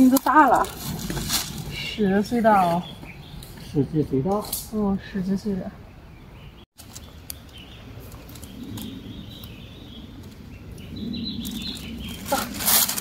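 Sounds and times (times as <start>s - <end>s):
low humming bird call: 5.9s - 13.0s
loud rustle: 11.6s - 13.0s.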